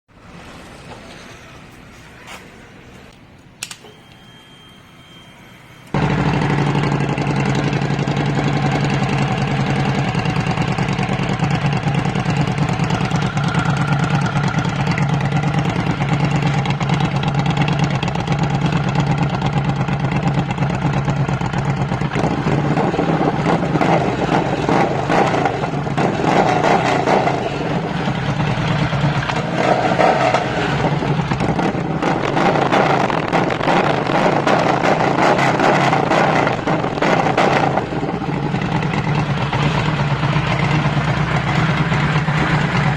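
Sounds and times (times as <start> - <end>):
click: 3.1 - 4.3
motorcycle engine idling and revving: 5.9 - 42.9.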